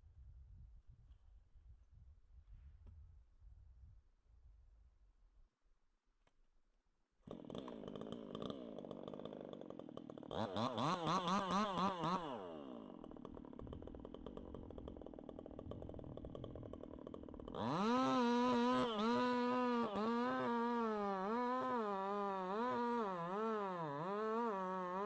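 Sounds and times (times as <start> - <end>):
chainsaw engine idling and revving: 7.3 - 25.0.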